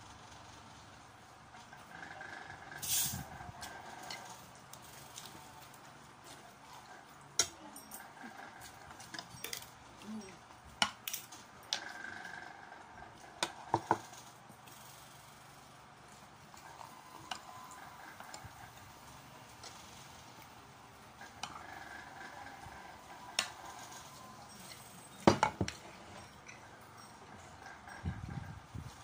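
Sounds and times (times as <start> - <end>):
utensils clinking on plates: 7.4 - 10.3, 22.6 - 27.9.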